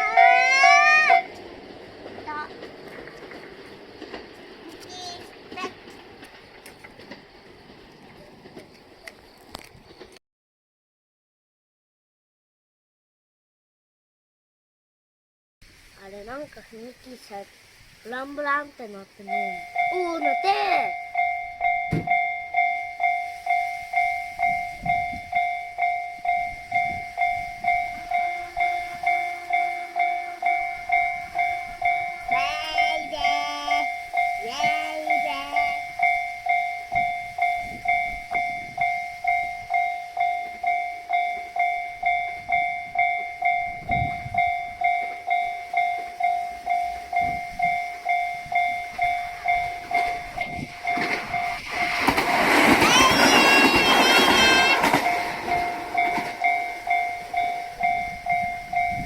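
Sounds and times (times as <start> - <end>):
train horn blasts: 0.0 - 1.4, 53.0 - 59.0
level-crossing warning bell ringing: 0.0 - 9.0, 18.2 - 59.0.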